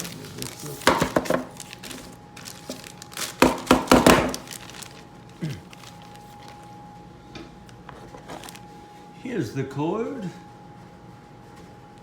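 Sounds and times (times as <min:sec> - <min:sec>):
knocks and rustles of packaging: 0:00.0 - 0:06.8, 0:07.9 - 0:08.7
faint steady hum: 0:00.0 - 0:12.0.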